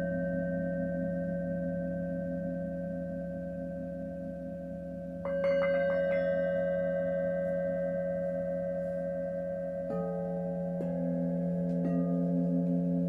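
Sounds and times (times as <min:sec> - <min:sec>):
singing bowls ringing: 0:00.0 - 0:13.0
singing bowl strikes: 0:05.2 - 0:13.0.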